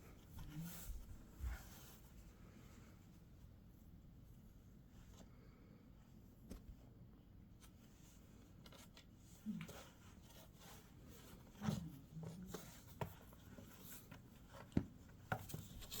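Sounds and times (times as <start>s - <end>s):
cats scuffling on a surface: 7.5s - 16.0s.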